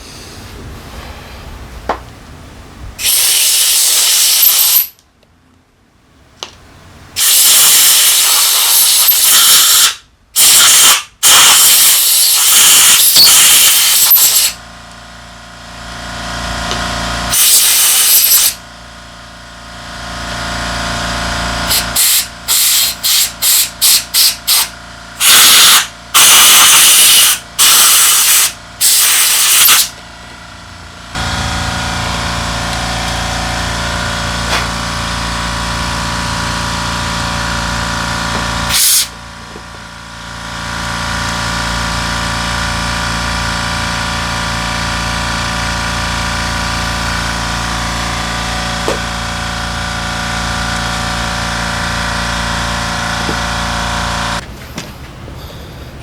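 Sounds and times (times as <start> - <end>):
hissing spray blasts: 3.0 - 4.7, 7.2 - 14.6, 21.7 - 30.0, 31.1 - 39.1
steady low hum: 27.5 - 56.0.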